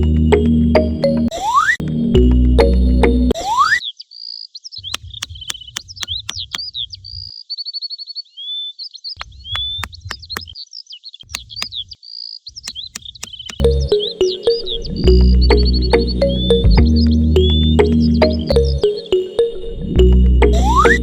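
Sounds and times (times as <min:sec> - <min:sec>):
small birds chirping and singing: 0:03.8 - 0:14.5
sharp clicks: 0:05.0 - 0:07.3, 0:09.2 - 0:10.6, 0:11.3 - 0:12.0, 0:12.6 - 0:13.9.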